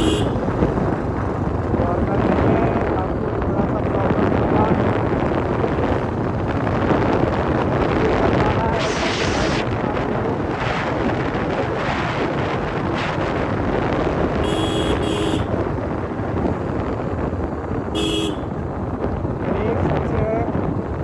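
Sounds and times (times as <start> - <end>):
horn beeping: 0.0 - 0.5, 14.4 - 15.6, 18.0 - 18.5
motorcycle engine running: 0.0 - 8.4, 13.5 - 19.5
wind noise on microphone: 0.0 - 21.0.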